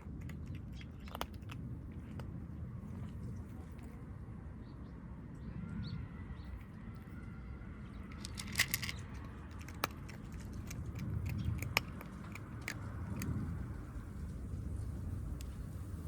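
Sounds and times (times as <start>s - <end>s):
cats crunching dry food: 0.0s - 4.1s, 8.0s - 15.6s
steady low rumble: 0.0s - 16.0s.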